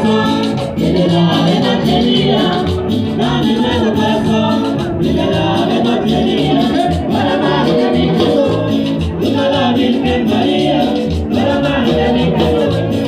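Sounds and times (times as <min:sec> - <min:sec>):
singing over a bass line: 0:00.0 - 0:13.0.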